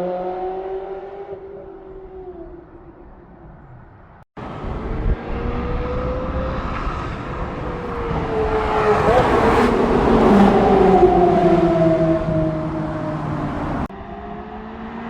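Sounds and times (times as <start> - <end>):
sports car engine passing: 4.4 - 15.0.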